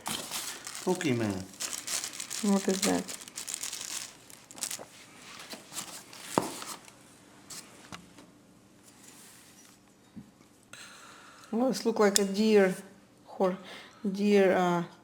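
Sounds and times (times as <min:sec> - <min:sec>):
rustling: 0:00.0 - 0:06.9.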